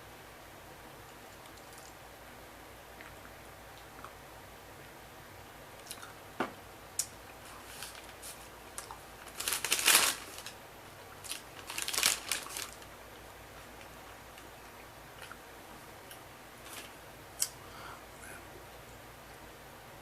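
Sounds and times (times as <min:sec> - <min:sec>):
packaging crinkling: 0:07.6 - 0:10.6, 0:11.2 - 0:12.9.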